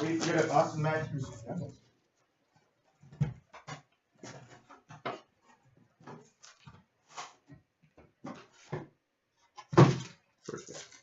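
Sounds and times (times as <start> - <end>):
card packaging rustling and tearing: 0.0 - 0.8.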